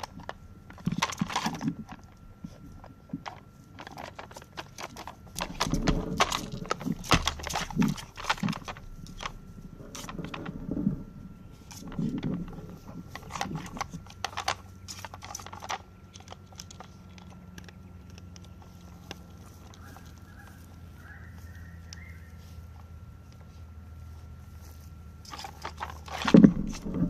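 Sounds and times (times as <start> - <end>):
plastic clacks and knocks: 0.0 - 11.1, 11.7 - 20.2, 25.3 - 27.0
faint steady hum: 0.0 - 27.0.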